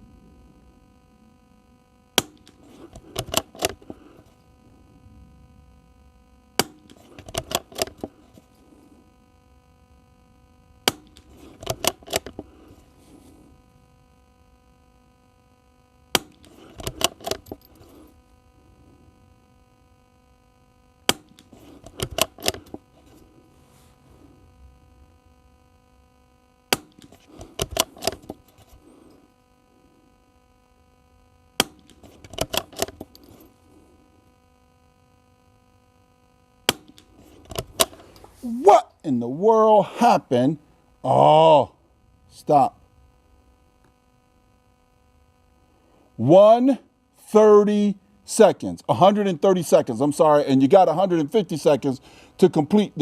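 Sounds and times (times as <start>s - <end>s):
rifle bolt clicking: 2.2s - 3.8s, 10.9s - 12.4s, 16.2s - 17.6s, 21.1s - 22.8s, 26.7s - 28.4s, 31.6s - 33.1s.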